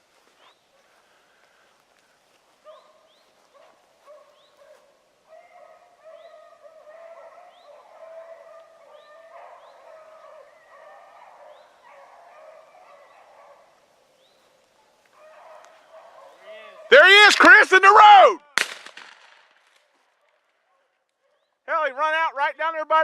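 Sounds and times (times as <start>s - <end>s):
hounds baying: 2.6s - 17.6s.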